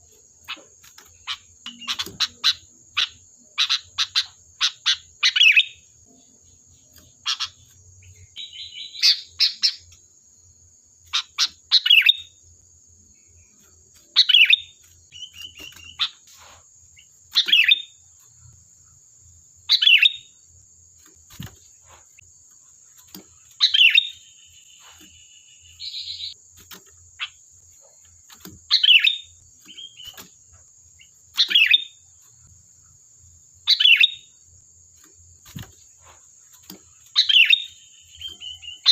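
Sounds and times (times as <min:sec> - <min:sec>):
bird chattering calls: 0:00.5 - 0:05.8, 0:07.0 - 0:09.8.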